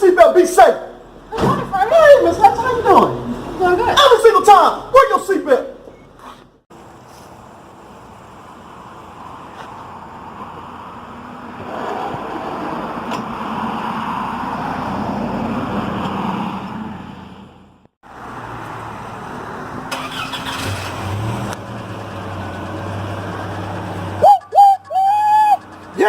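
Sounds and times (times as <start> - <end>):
vehicle engine running: 19.7 - 26.0.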